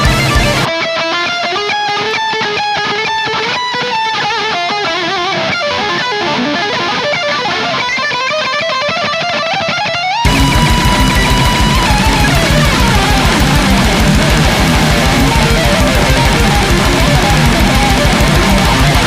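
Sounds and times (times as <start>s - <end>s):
heavy backing with steady beat: 0.0s - 0.7s, 10.3s - 19.0s
electric guitar lead line: 0.0s - 19.0s.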